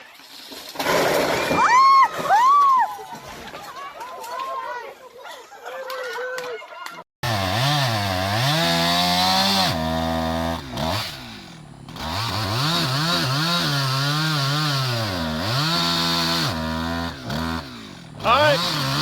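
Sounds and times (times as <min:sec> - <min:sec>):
chainsaw cutting: 0:07.2 - 0:19.0.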